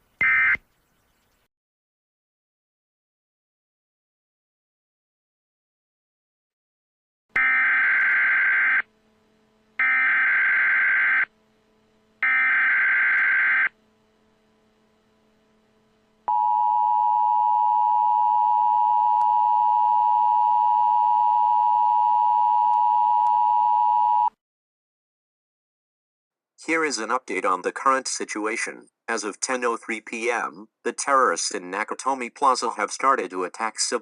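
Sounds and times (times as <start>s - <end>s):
two-tone attention signal: 16.3s - 24.3s.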